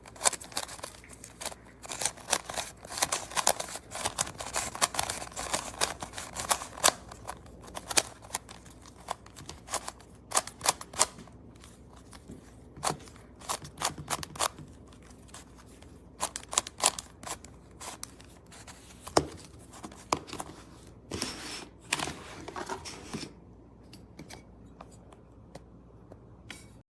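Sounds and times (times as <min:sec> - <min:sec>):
plastic cube clicking and clacking: 0:00.1 - 0:11.2, 0:12.0 - 0:15.5, 0:16.2 - 0:18.2.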